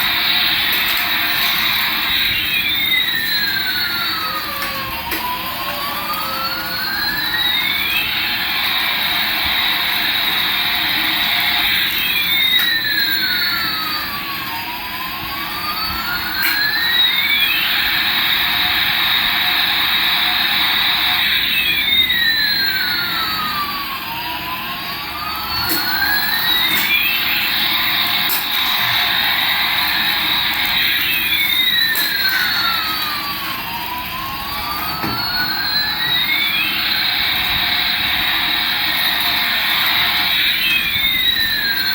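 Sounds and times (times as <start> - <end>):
siren-like sweeping tone: 0.0 - 41.9.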